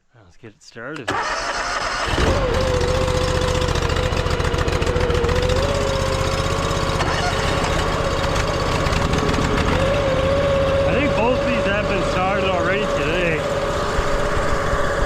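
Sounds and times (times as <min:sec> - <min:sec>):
pressure washer engine starting: 0:01.0 - 0:15.0.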